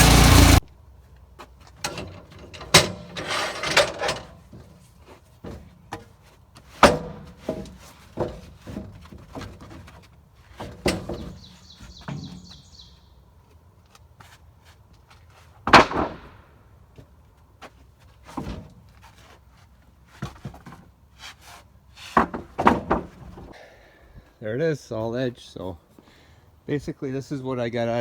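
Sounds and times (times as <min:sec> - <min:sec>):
gas engine shutting off: 0:00.0 - 0:00.6
wooden boards knocking and clattering: 0:05.4 - 0:11.4, 0:15.6 - 0:17.2, 0:18.3 - 0:18.9, 0:22.1 - 0:23.5
bird chirping: 0:11.1 - 0:13.2.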